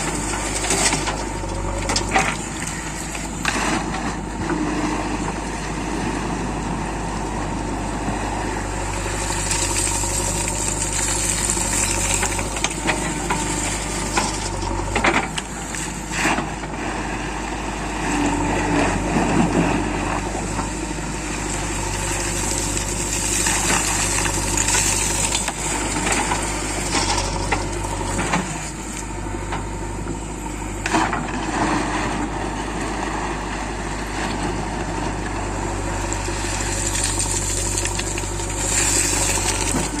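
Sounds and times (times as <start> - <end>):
diesel engine running: 0.0 - 40.0.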